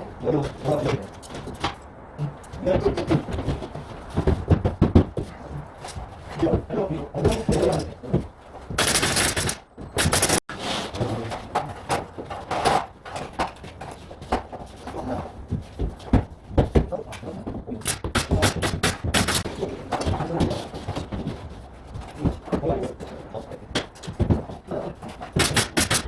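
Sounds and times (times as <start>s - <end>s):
nail gun firing: 8.8s - 10.4s, 17.8s - 19.5s, 25.4s - 26.0s.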